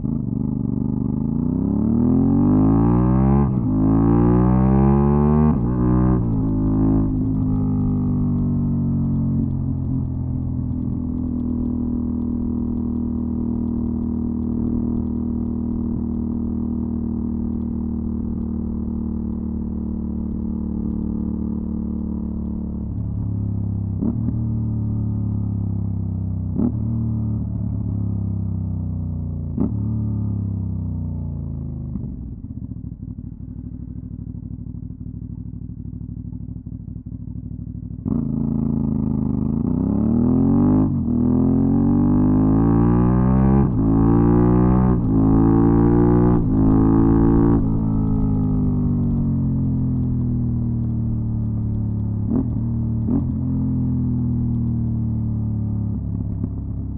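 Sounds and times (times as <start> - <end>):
motorcycle engine revving: 0.0 - 28.3, 34.2 - 56.9.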